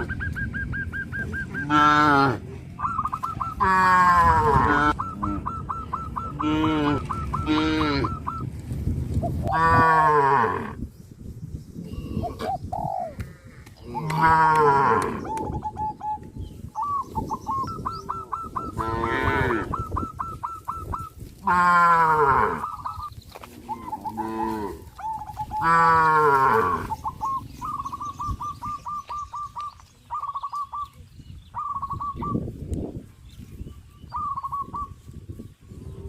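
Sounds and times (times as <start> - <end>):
cattle mooing: 1.5 - 2.5, 3.6 - 5.4, 6.2 - 8.2, 13.9 - 15.2, 18.7 - 19.7, 21.4 - 22.6, 25.6 - 26.9
bird chirping: 15.1 - 18.8, 26.7 - 36.0.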